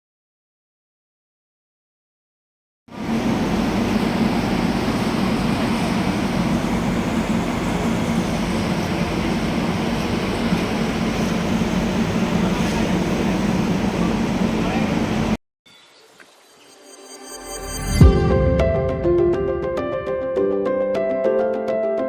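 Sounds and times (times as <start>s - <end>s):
train mechanical noise: 2.9s - 15.4s
constant low hum: 3.0s - 15.4s.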